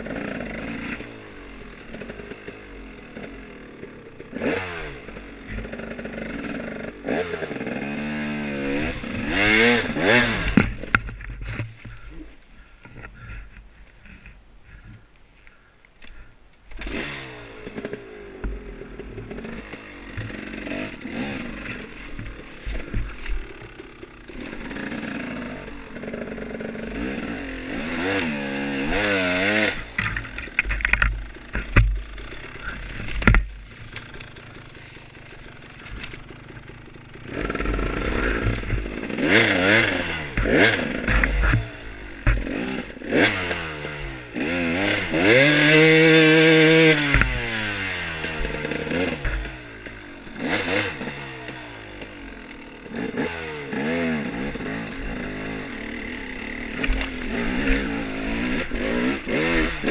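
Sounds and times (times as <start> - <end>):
motorcycle engine revving: 0.0 - 13.4, 16.7 - 59.9
knocks and rattles: 29.8 - 42.6.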